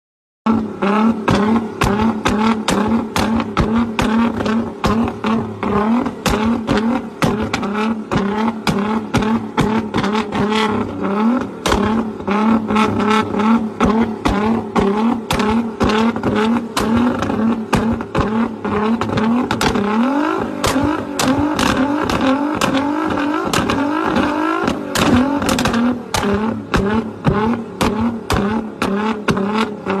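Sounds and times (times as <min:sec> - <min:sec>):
car engine revving: 0:00.5 - 0:30.0
sharp exhaust cracks: 0:00.6 - 0:30.0.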